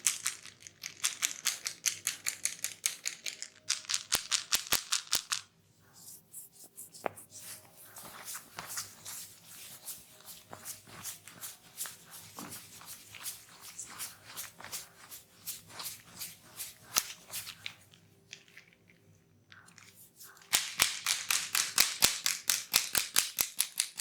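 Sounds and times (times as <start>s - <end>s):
soft rubbing and patting: 5.8s - 18.7s.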